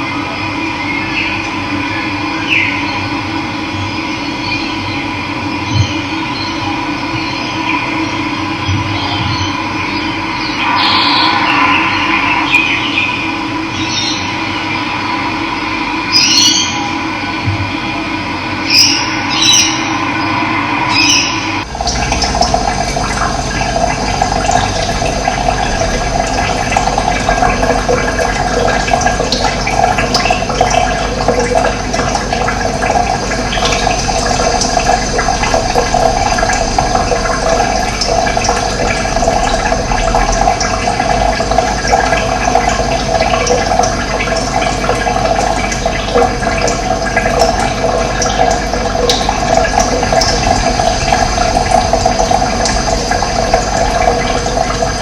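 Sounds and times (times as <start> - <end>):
water rushing: 9.7 - 17.4, 18.7 - 55.0.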